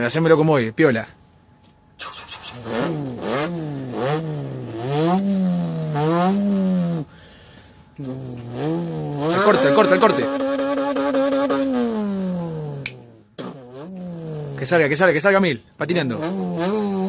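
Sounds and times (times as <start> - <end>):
person imitating car engine: 2.0 - 7.2, 8.0 - 15.0, 15.9 - 17.0.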